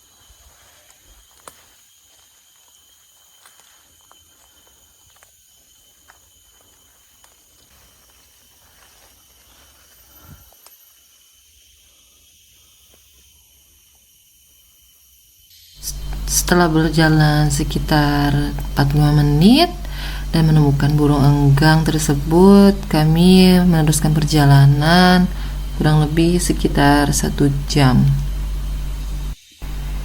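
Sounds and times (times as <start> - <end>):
insects droning: 0.0 - 30.0.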